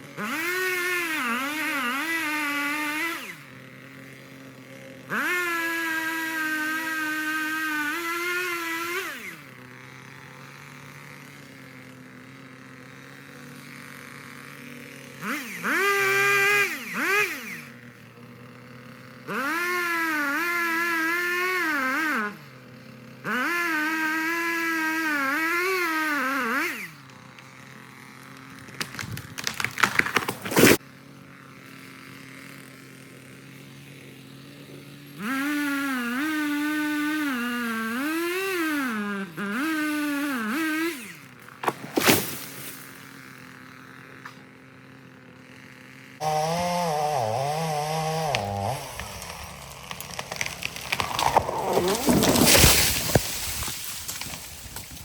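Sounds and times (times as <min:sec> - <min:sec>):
chainsaw revving and cutting wood: 0:00.0 - 0:55.0
sharp cracks and snaps: 0:28.5 - 0:30.8, 0:49.0 - 0:55.0.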